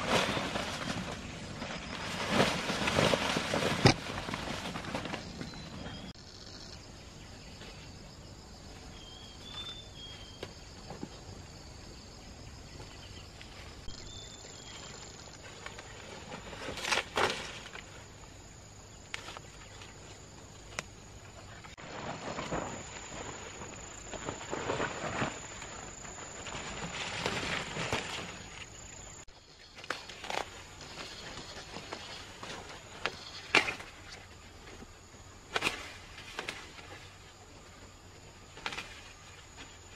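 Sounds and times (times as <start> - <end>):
rustling and crunching strokes: 0.0 - 6.2, 12.8 - 39.9
insects trilling: 0.0 - 39.9
bird chirps: 8.8 - 10.6, 12.1 - 15.4.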